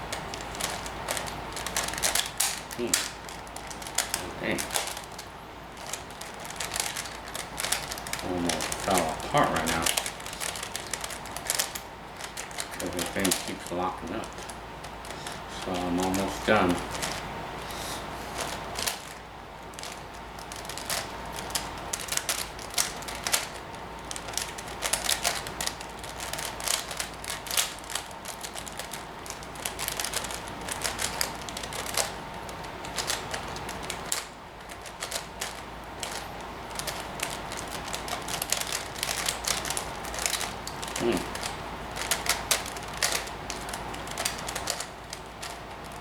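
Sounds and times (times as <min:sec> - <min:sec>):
puzzle cube clicking as turned: 0:00.0 - 0:17.2, 0:18.4 - 0:46.0.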